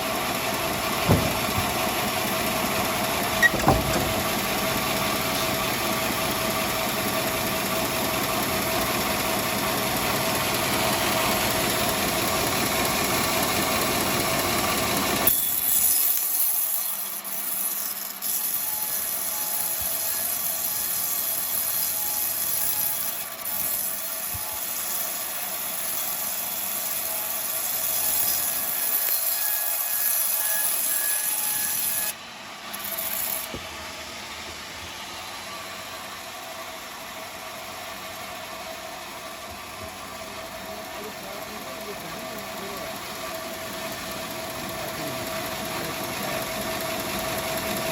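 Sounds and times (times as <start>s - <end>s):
bandsaw sawing wood: 0.0s - 35.6s.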